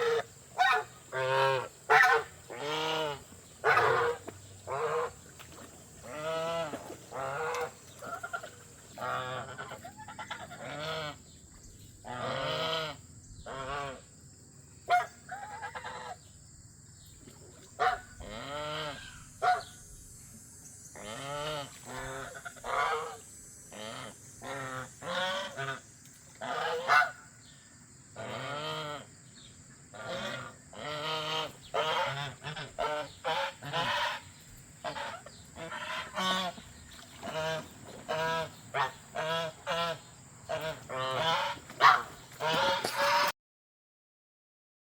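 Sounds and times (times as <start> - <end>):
geese honking: 0.0 - 5.2, 6.0 - 11.2, 12.0 - 14.0, 17.8 - 19.7, 21.0 - 27.2, 28.2 - 29.1, 29.9 - 43.3.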